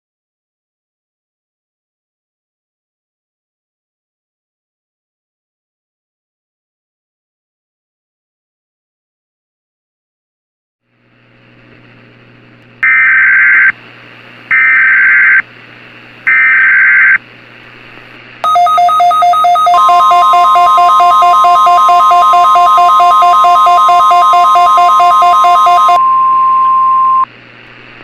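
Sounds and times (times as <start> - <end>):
screeching digital data tones: 18.4 - 26.0
pulsing electronic alert tones: 18.4 - 26.1
steady alert tone: 18.4 - 26.1.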